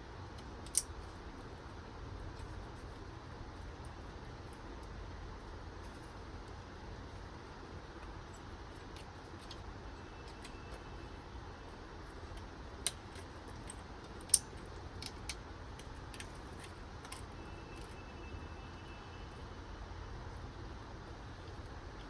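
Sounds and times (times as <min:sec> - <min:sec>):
steady low hum: 0:00.0 - 0:22.0
clicks of handling computer parts: 0:00.6 - 0:00.9.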